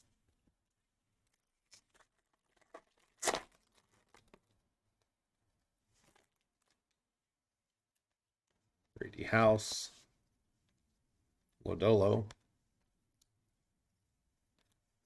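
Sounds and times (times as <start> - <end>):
foil wrapper tearing and crinkling: 1.6 - 4.4.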